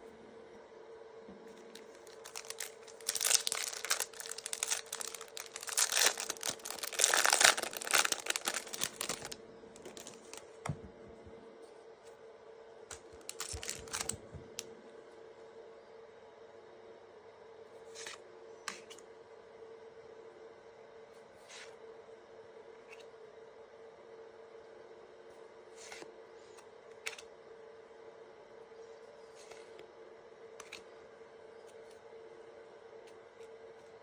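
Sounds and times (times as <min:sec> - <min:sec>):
faint steady hum: 0:00.0 - 0:34.0
wrapper crinkling and tearing: 0:01.7 - 0:10.4, 0:13.2 - 0:14.2.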